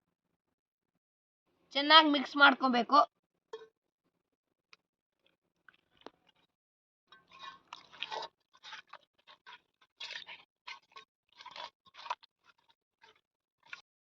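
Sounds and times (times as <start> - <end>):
hand squishing meat in marinade: 7.2 - 13.8.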